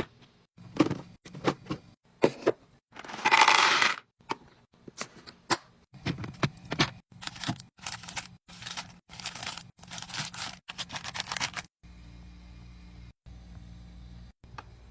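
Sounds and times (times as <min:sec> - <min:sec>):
wrappers crinkling and scraping: 0:07.1 - 0:11.7
steady low hum: 0:11.4 - 0:14.9.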